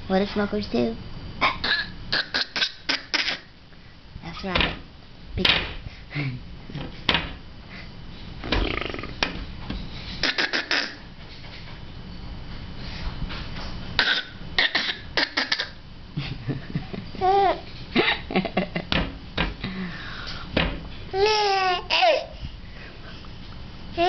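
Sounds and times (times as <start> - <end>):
baby fake coughing: 1.4 - 3.5, 14.0 - 15.8
baby laughing: 14.0 - 15.8, 21.2 - 22.3
baby babbling: 21.2 - 22.3.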